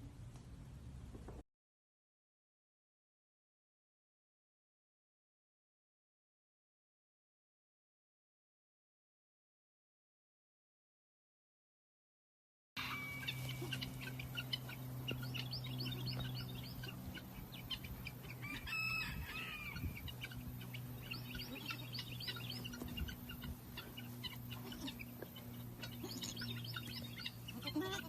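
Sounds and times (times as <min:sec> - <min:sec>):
chicks peeping: 0:12.8 - 0:28.0
steady low hum: 0:12.8 - 0:28.0.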